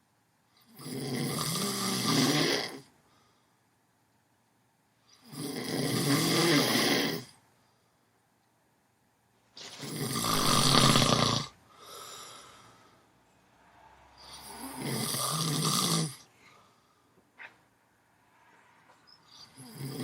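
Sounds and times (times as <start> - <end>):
loud snoring: 0.7 - 2.9, 5.2 - 7.3, 9.7 - 12.1, 14.2 - 16.3, 19.4 - 20.0
soft breath out: 10.3 - 15.0, 16.3 - 17.3.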